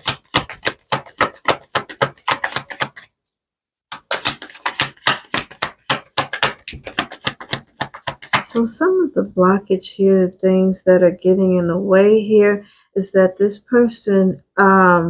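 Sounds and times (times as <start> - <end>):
cards being shuffled: 0.0 - 3.1, 3.9 - 8.7.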